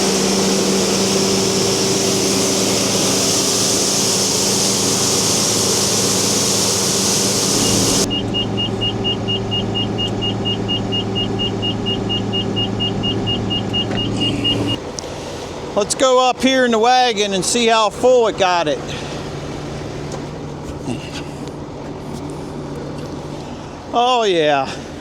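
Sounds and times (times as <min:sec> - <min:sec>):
combine harvester rushing noise: 0:00.0 - 0:23.9
engine humming: 0:00.0 - 0:24.0
high electronic beeps: 0:07.6 - 0:14.8.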